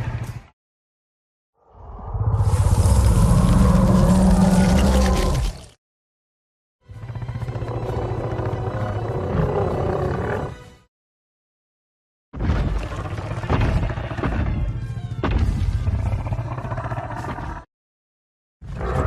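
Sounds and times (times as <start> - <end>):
monster roaring: 1.8 - 5.7.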